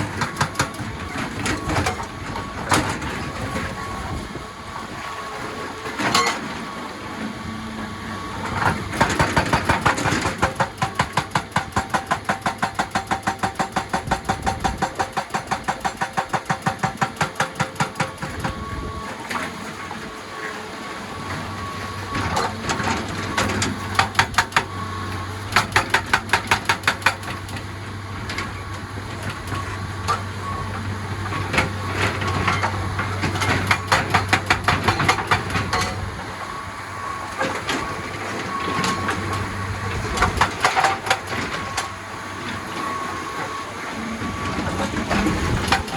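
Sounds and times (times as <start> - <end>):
hydraulic breaker hammering rock: 0.0 - 4.2, 8.4 - 20.0, 22.1 - 36.2, 37.4 - 42.0, 44.3 - 45.9
excavator engine running: 0.0 - 45.9.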